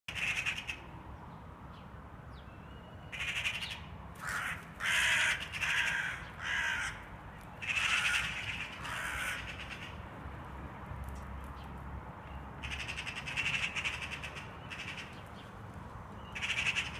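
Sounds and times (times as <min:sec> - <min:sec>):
crows cawing: 0:00.1 - 0:00.8, 0:03.1 - 0:10.0, 0:12.6 - 0:15.2, 0:16.3 - 0:16.9.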